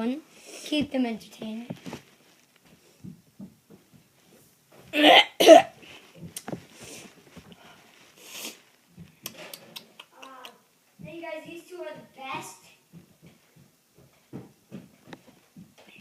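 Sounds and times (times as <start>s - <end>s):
handling noises: 0.8s - 5.0s
person coughing: 5.0s - 5.8s.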